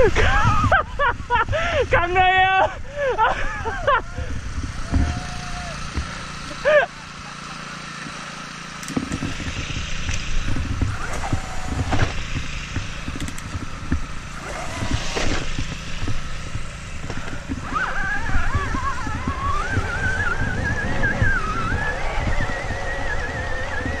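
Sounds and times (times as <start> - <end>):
bike rumbling over dirt trail: 0.0 - 24.0
high wavering squeal: 17.6 - 24.0.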